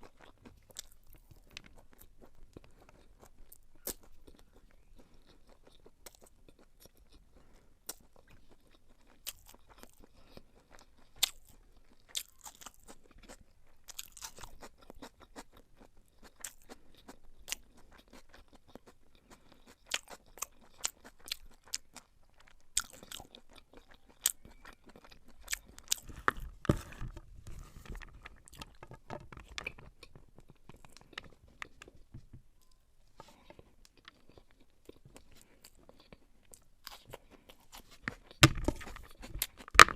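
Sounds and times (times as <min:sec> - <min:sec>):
wet chewing: 0:00.0 - 0:39.9.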